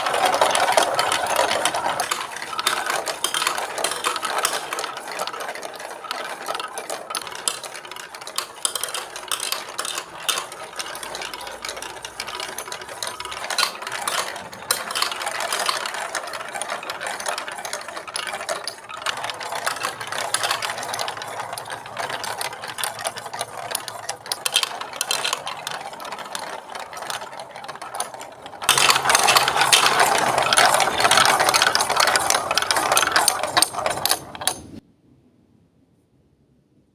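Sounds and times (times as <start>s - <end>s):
marbles rolling on plastic track: 0.0s - 34.8s.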